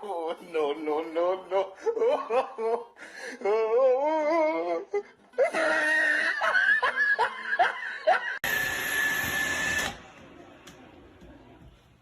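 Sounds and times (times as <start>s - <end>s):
person laughing: 1.5s - 8.4s.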